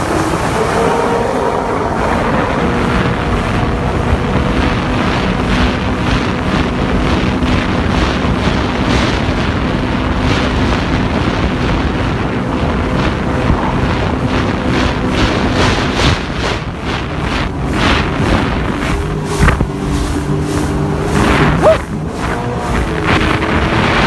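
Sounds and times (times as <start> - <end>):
jet ski engine running: 0.0 - 24.0
wind buffeting microphone: 0.0 - 24.0
water spray rushing: 12.1 - 24.0.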